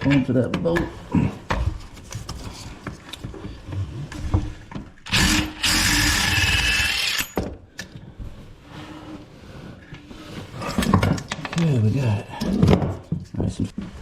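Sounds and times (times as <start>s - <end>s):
power tool spinning: 5.0s - 7.4s.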